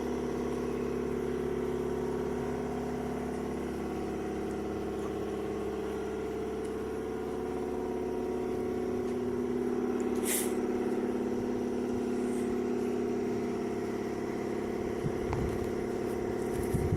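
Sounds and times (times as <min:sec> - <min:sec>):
engine humming steadily: 0:00.0 - 0:16.9
short hiss: 0:10.1 - 0:10.6.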